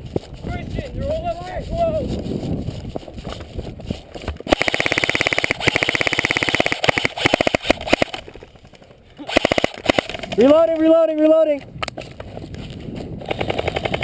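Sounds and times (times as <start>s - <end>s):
airsoft rifle rapid fire: 4.4s - 8.4s, 9.2s - 10.6s, 13.2s - 14.0s.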